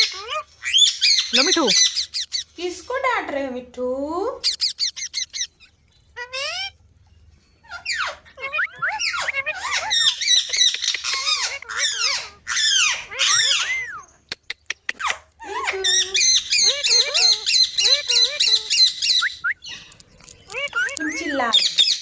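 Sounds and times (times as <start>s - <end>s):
parrot screeching and squawking: 0.0s - 2.6s, 4.4s - 6.8s, 7.6s - 14.2s, 14.9s - 22.0s
sharp clicks: 14.3s - 15.2s.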